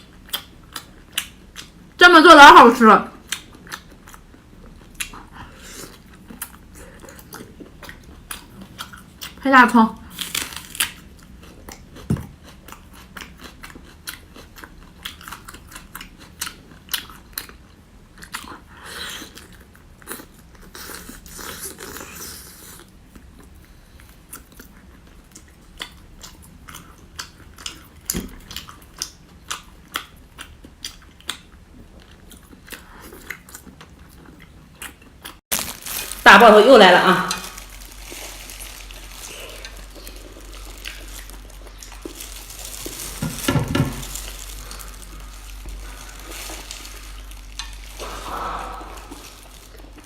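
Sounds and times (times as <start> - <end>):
crunchy chewing: 37.4 - 50.0.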